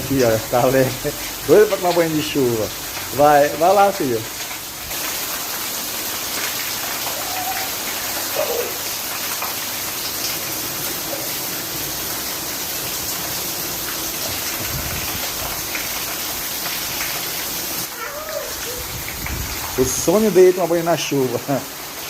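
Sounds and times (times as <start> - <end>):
rain pattering: 0.0 - 22.0
faint child's voice: 7.0 - 8.8, 17.9 - 19.1.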